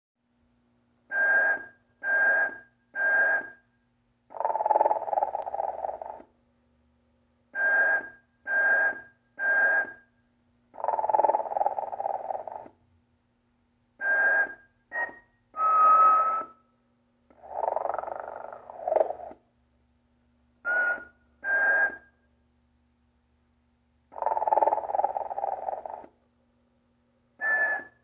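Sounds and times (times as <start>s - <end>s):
faint steady hum: 0.2s - 28.0s
snoring toy through small speaker: 4.3s - 6.3s, 10.7s - 12.8s, 17.3s - 19.4s, 24.1s - 26.2s.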